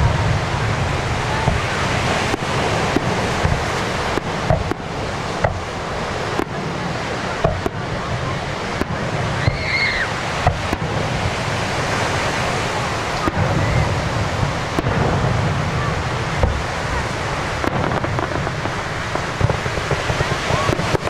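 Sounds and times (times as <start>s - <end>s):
firework bangs: 0.0s - 21.0s
fireworks rumble and crackle: 0.0s - 21.0s
firework whistle: 8.6s - 21.0s.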